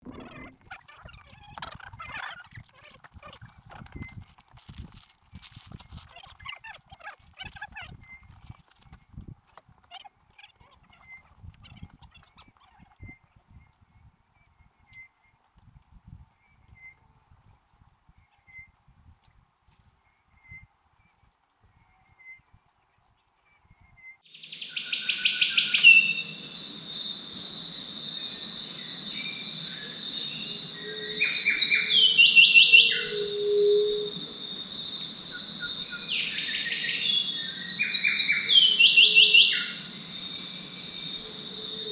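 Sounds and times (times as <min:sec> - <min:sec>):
faint chirp: 0:00.0 - 0:41.9
birds calling in trills: 0:28.3 - 0:34.4, 0:35.2 - 0:40.0
steady insect buzzing: 0:33.2 - 0:41.9.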